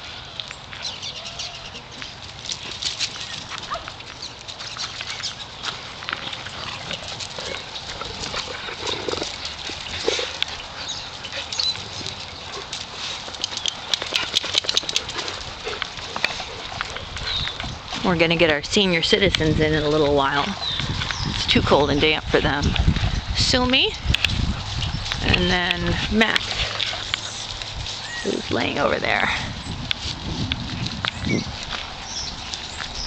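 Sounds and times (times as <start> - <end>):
dogs scuffling with clicks: 0.4 - 33.0
dogs yipping: 0.8 - 17.7.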